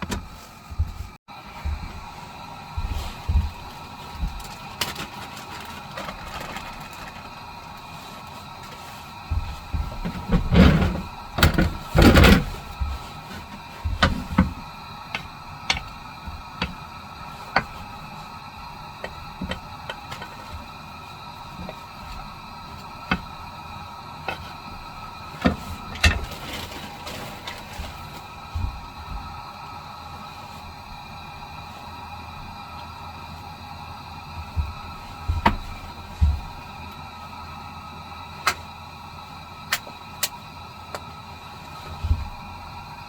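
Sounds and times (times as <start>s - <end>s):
thumps and rustling: 0.0s - 23.6s, 24.2s - 29.5s, 34.3s - 36.9s, 41.8s - 42.7s
faint steady hum: 0.0s - 43.0s.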